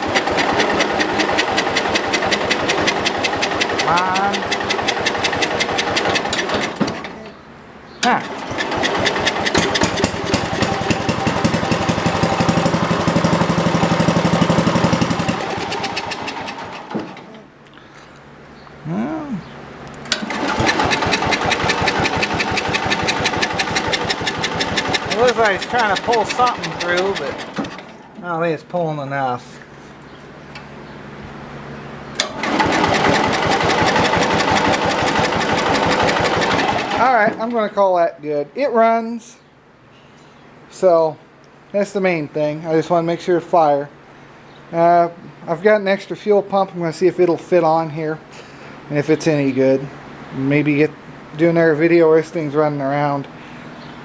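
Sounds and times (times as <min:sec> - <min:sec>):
mower engine running and sputtering: 0:00.0 - 0:07.2, 0:08.1 - 0:17.4, 0:20.1 - 0:28.1, 0:32.2 - 0:37.5.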